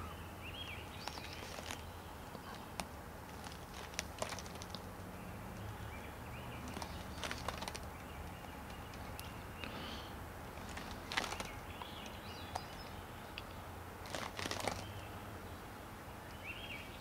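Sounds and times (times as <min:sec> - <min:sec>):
low steady hum: 0:00.0 - 0:17.0
paper rustling: 0:01.1 - 0:01.8, 0:02.5 - 0:04.8, 0:06.7 - 0:07.9, 0:10.6 - 0:11.6, 0:14.0 - 0:14.8.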